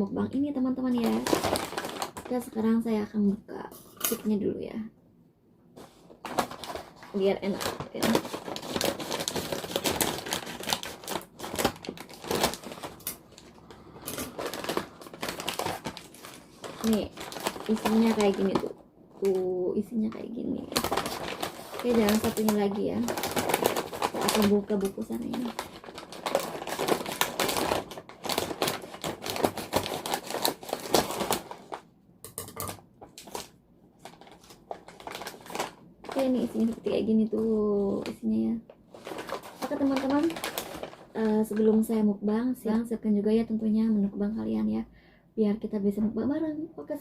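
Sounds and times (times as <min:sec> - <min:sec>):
plastic chip bag crinkling: 0:00.8 - 0:02.6, 0:05.8 - 0:31.9, 0:32.5 - 0:41.9
bag being torn open: 0:25.2 - 0:31.8.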